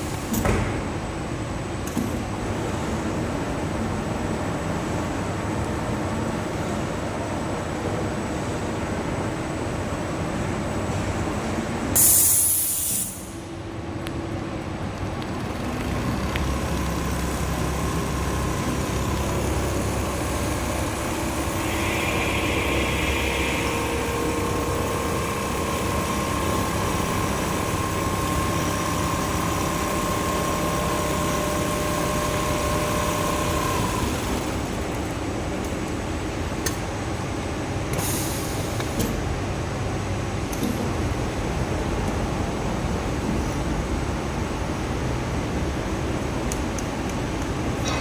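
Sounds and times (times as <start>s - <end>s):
machine whine: 14.8s - 35.2s
sewing machine humming: 14.9s - 34.9s.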